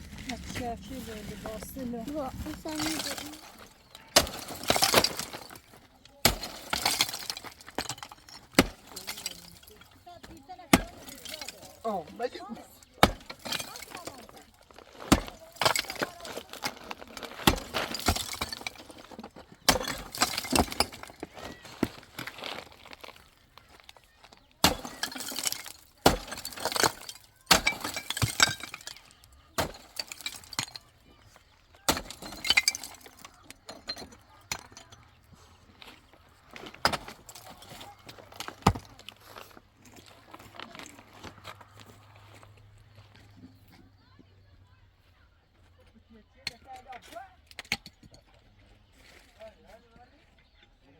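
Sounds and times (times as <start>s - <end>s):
hard objects knocking and clinking: 0.8s - 12.2s, 12.9s - 36.0s.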